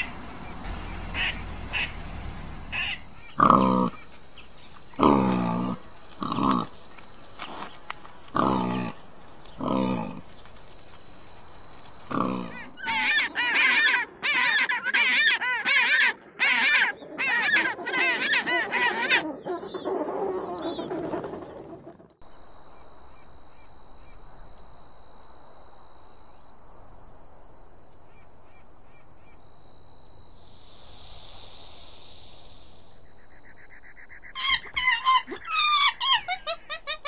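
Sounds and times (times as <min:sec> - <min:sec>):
bird honking calls: 0:00.0 - 0:06.8
faint ticks: 0:27.9 - 0:28.2
high thin whine: 0:30.1 - 0:33.5.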